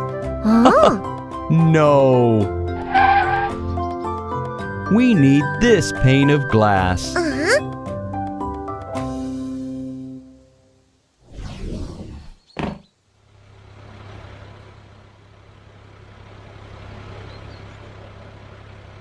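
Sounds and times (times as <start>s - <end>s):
truck engine running: 13.3s - 19.0s.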